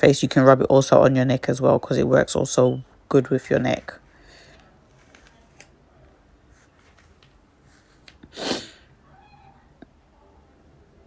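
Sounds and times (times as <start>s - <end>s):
person sneezing: 8.3s - 8.9s.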